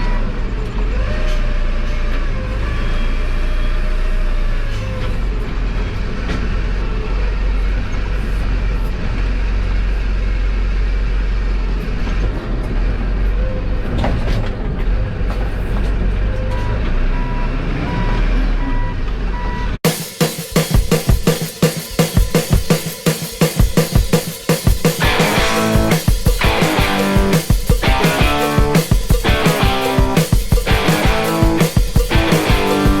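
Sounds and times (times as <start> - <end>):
reversing alarm beeps: 16.3 - 19.7
large engine running: 24.8 - 33.0.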